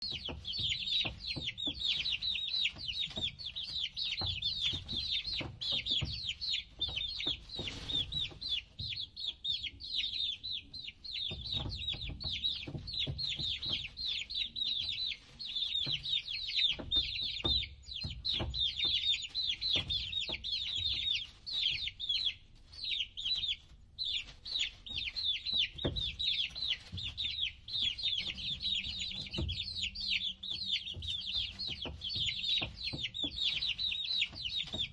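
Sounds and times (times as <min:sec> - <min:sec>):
baby chicks peeping: 0:00.0 - 0:34.9.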